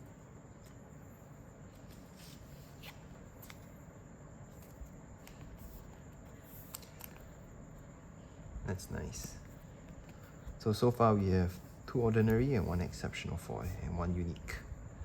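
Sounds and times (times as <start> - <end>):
low room hum: 0.0 - 15.0
cards clicking and rustling: 4.5 - 7.4.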